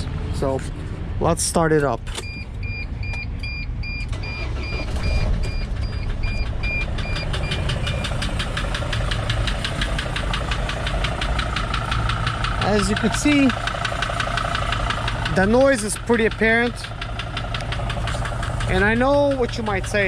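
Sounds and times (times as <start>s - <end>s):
dashboard warning chime beeping: 2.2s - 8.2s
diesel engine idling: 2.6s - 20.0s
fast regular engine knock: 5.6s - 20.0s.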